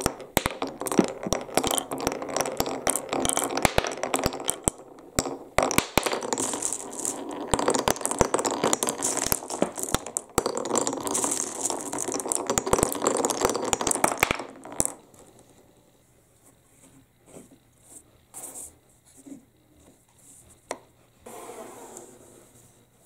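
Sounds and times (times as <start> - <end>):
marbles clicking on wood: 0.0 - 15.7
marbles rolling on wooden track: 0.0 - 15.8.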